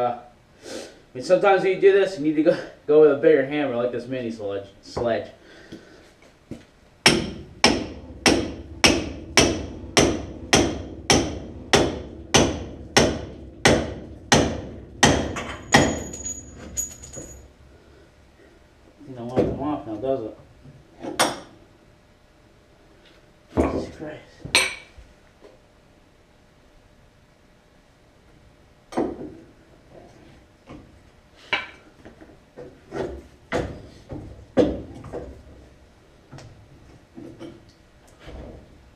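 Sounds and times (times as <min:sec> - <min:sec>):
hammer striking steel: 0:07.0 - 0:16.5
faint high metallic ring: 0:15.5 - 0:17.6.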